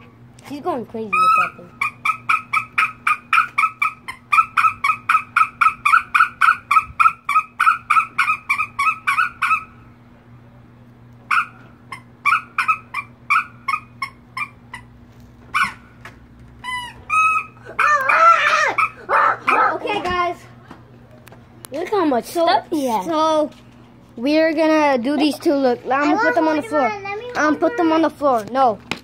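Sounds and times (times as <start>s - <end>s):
hand squeaker squeaking: 1.0s - 9.7s, 16.6s - 17.7s.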